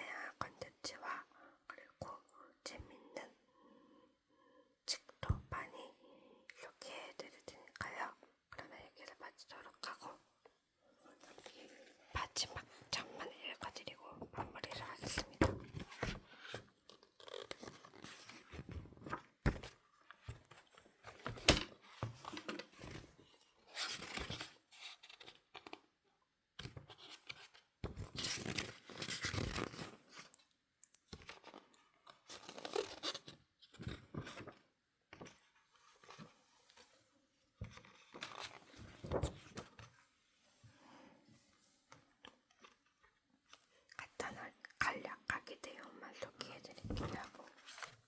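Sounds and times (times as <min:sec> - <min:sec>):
book pages rustling and flicking: 0:14.7 - 0:25.9, 0:26.6 - 0:30.4, 0:31.1 - 0:37.0, 0:37.6 - 0:40.0, 0:46.7 - 0:48.0.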